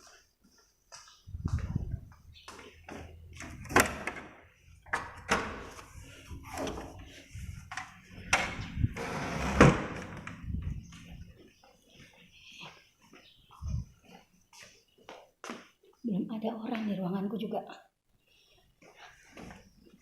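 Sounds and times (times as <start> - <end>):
door knocks and scrapes: 8.3 - 10.4.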